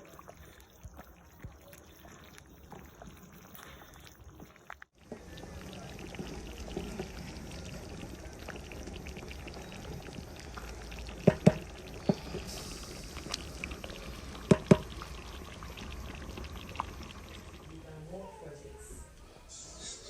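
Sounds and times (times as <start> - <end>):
food sizzling on stove: 0.0 - 18.2
sharp knocks: 11.3 - 11.6.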